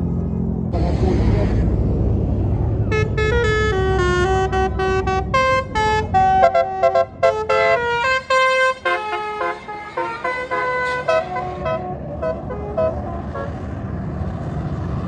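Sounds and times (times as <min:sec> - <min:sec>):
bus engine rumble: 0:00.0 - 0:15.0
bus horn playing a tune: 0:02.9 - 0:13.8.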